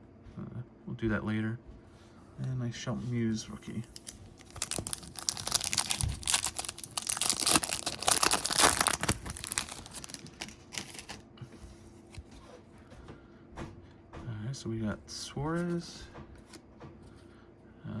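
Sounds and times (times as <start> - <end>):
rustling: 3.6 - 11.2
foil wrapper crinkling and tearing: 3.8 - 11.2.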